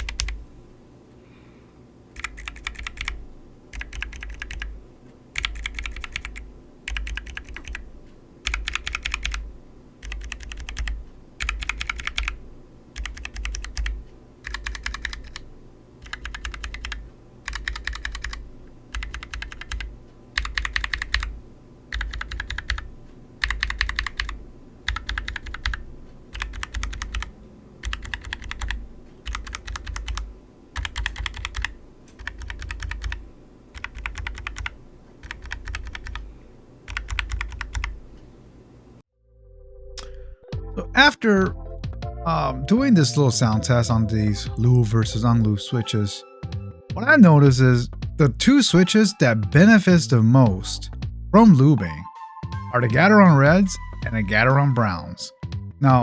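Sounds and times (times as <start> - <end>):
mechanical keyboard typing: 0.0 - 0.4, 2.1 - 38.0.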